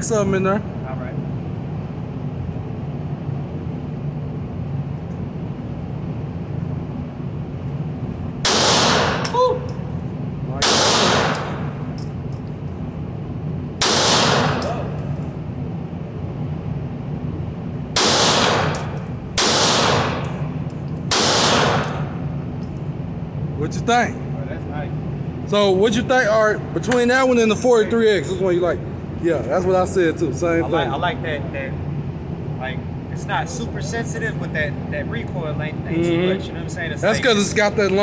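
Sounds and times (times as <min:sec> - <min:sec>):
pistol shots echoing: 0:08.5 - 0:09.3, 0:10.6 - 0:11.8, 0:13.8 - 0:14.9, 0:18.0 - 0:20.4, 0:21.1 - 0:22.2.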